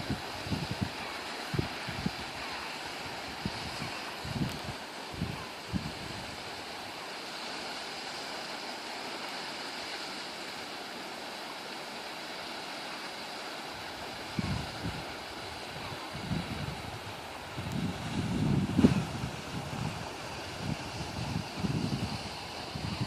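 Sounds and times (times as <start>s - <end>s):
wind buffeting microphone: 0.0s - 6.8s, 13.8s - 23.0s
waterfall rushing: 0.0s - 23.0s.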